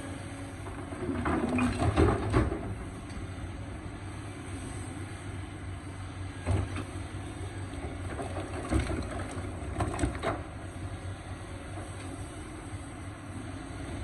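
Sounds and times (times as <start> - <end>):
excavator engine running: 0.0 - 14.0
heavy machine clunks: 0.5 - 3.2, 6.4 - 7.0.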